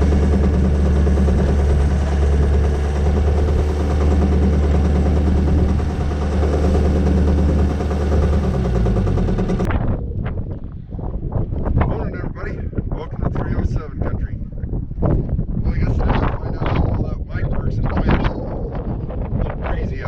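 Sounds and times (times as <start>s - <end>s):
engine running and winding down: 0.0s - 9.7s.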